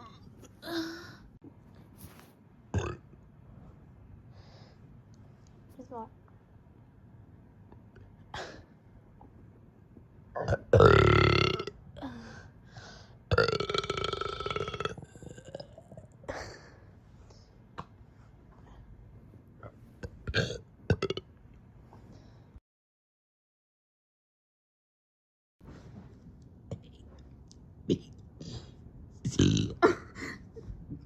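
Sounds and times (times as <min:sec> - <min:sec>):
person burping loudly: 0:02.7 - 0:03.0, 0:10.4 - 0:12.2, 0:13.3 - 0:16.4, 0:20.2 - 0:21.3, 0:29.3 - 0:30.4.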